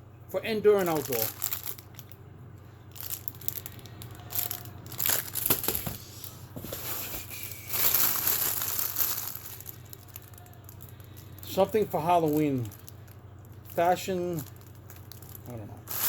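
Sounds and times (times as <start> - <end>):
packaging crinkling and rustling: 0.7 - 2.2, 2.9 - 16.0.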